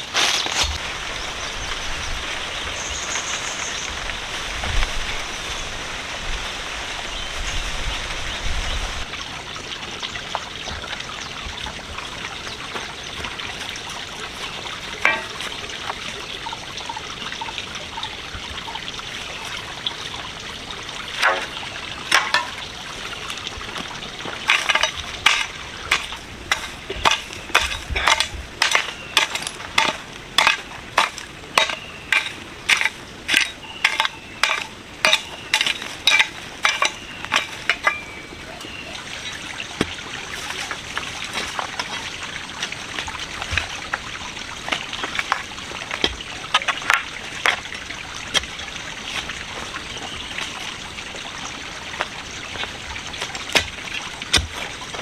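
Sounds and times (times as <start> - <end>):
steady sizzling hiss: 0.0 - 9.3
utensil knocking in a pan: 15.0 - 15.6, 24.5 - 38.1
utensil clinks: 24.5 - 38.4.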